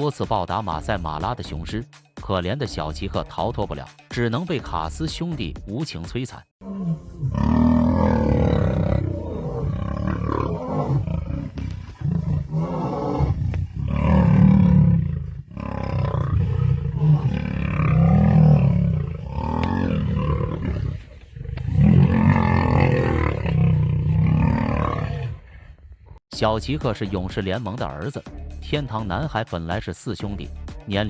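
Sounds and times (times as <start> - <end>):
lions snarling and growling: 6.6 - 25.6.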